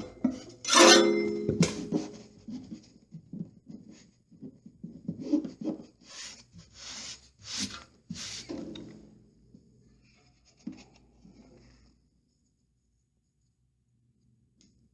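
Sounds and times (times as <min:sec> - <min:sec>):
brush strokes on paper: 0:06.0 - 0:08.5.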